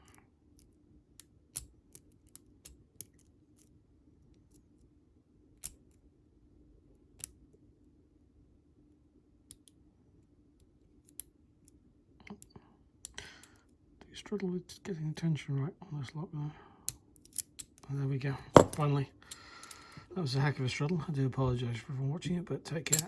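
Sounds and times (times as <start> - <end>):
faint steady hum: 0.0 - 23.0.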